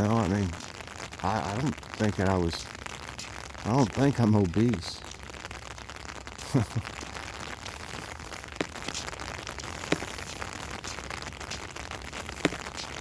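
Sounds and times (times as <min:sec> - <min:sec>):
steady rain falling: 0:00.0 - 0:13.0
sharp taps: 0:08.6 - 0:13.0.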